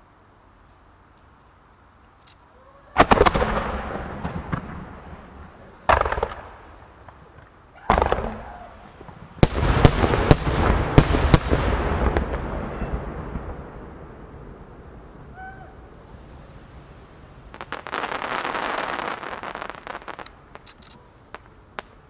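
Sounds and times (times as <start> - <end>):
firework shells booming: 3.0 - 14.8
rapid volley of firework bursts: 3.0 - 15.2.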